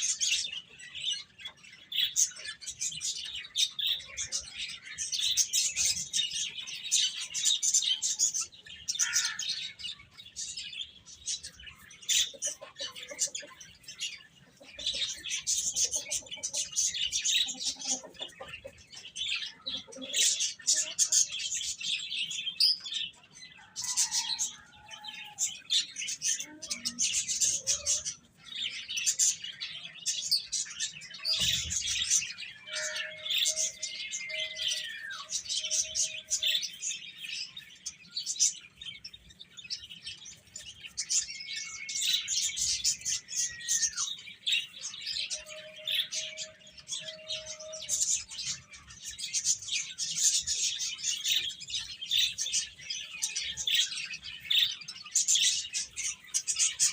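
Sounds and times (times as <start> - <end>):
baby chicks peeping: 0.0 - 56.9.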